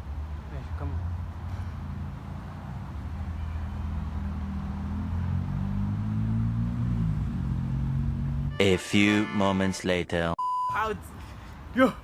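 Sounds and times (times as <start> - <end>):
vehicle engine humming: 0.0 - 8.9.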